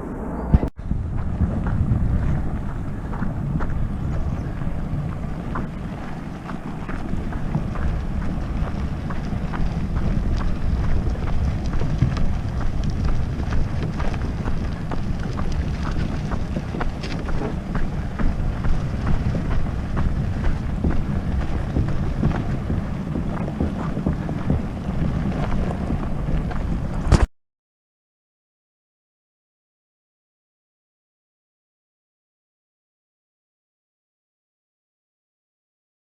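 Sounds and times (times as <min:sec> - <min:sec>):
wind buffeting microphone: 0:00.0 - 0:27.3.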